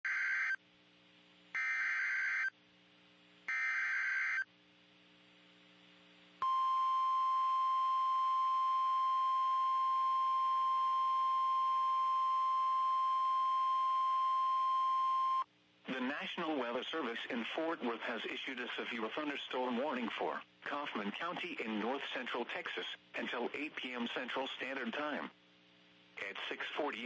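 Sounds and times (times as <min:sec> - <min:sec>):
steady warning alarm tone: 0:03.5 - 0:04.5, 0:06.4 - 0:15.4.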